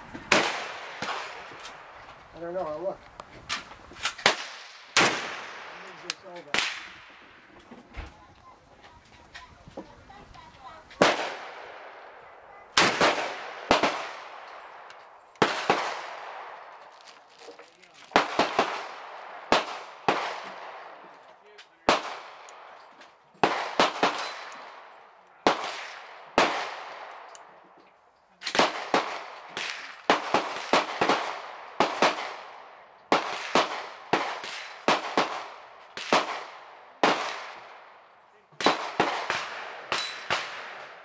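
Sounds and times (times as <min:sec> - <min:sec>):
gunshots with long echo: 0:00.3 - 0:02.0, 0:04.2 - 0:07.5, 0:11.0 - 0:16.9, 0:18.1 - 0:21.1, 0:21.9 - 0:22.8, 0:23.4 - 0:27.3, 0:28.4 - 0:41.0.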